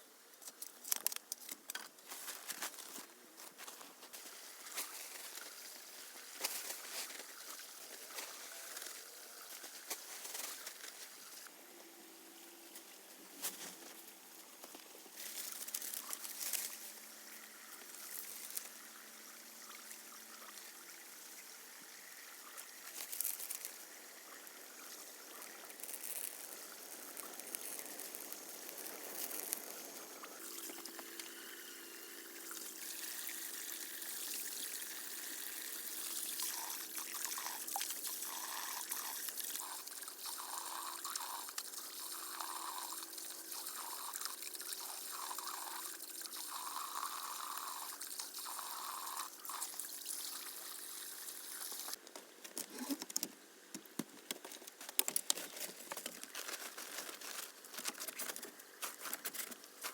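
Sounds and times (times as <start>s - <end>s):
water trickling and pouring: 2.2s - 11.5s, 14.8s - 52.0s.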